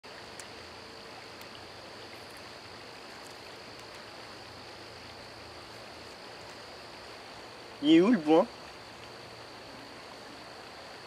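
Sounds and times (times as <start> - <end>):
constant high-pitched tone: 0.0 - 11.0
steady hiss: 0.0 - 11.0
faint ticks: 0.1 - 0.6, 1.2 - 7.2.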